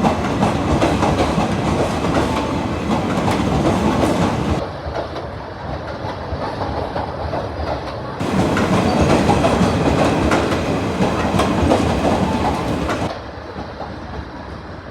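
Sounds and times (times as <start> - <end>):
train wheels clicking over rail joints: 0.0 - 4.6, 6.9 - 13.1.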